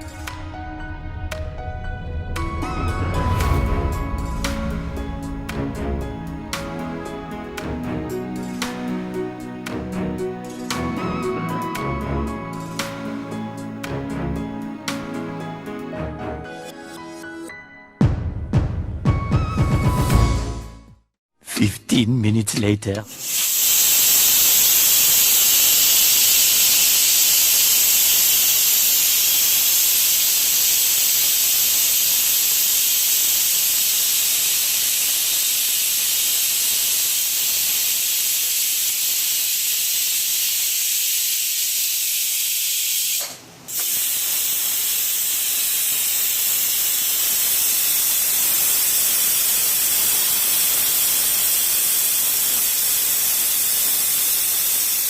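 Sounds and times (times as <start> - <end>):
pressure cooker whistle hissing: 10.6 - 13.2, 23.1 - 55.0.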